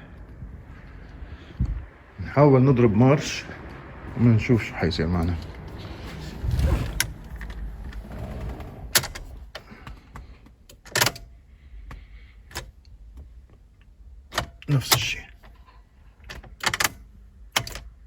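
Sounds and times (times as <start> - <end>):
ignition key clicks: 9.0 - 15.6, 16.2 - 18.0.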